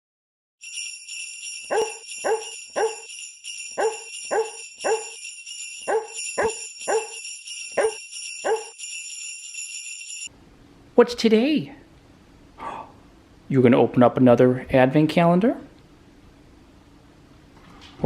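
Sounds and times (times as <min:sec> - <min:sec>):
sleigh bells jingling: 0:00.6 - 0:10.3
dog barking: 0:01.7 - 0:03.1, 0:03.8 - 0:05.2, 0:05.9 - 0:07.2, 0:07.8 - 0:08.7.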